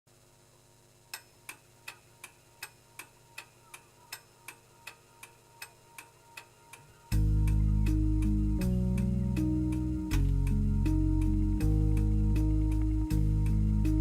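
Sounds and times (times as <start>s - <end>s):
faint hum: 0.1s - 14.0s
clock-like ticking: 1.1s - 10.6s.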